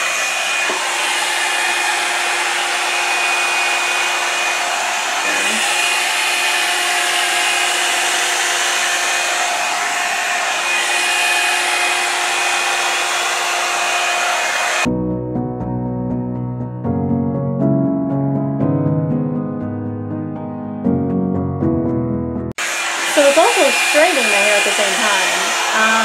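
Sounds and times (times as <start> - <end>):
hair dryer running: 0.0 - 14.9, 22.6 - 26.0.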